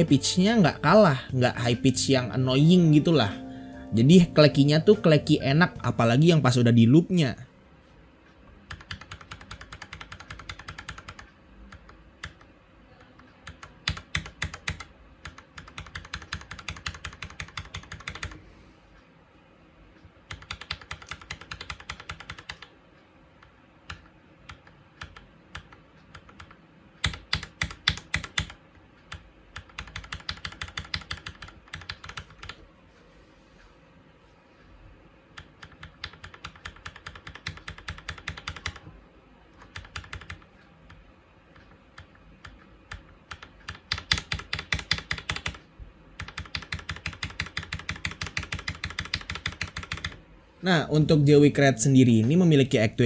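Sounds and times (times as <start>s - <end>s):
typing on a mechanical keyboard: 8.6s - 18.4s, 20.3s - 22.7s, 23.9s - 32.6s, 35.4s - 38.9s, 39.6s - 41.0s, 41.6s - 45.6s, 46.2s - 50.2s.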